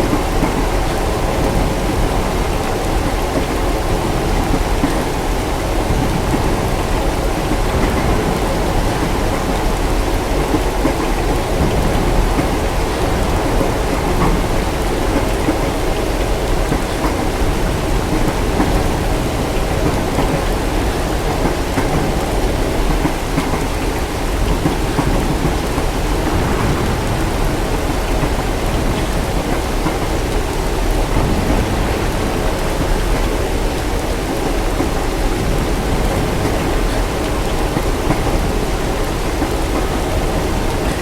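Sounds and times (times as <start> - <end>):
low thunder rumble: 0.0 - 40.7
heavy rain: 0.0 - 41.0.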